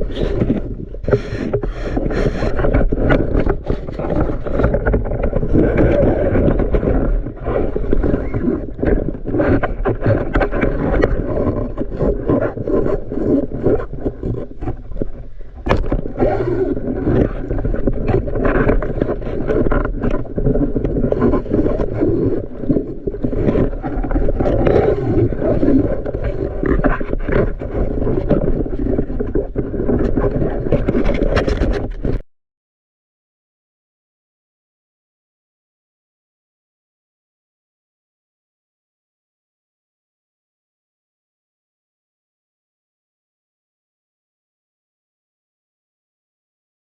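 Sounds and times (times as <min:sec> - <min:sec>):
muffled underwater rushing: 0:00.0 - 0:32.2.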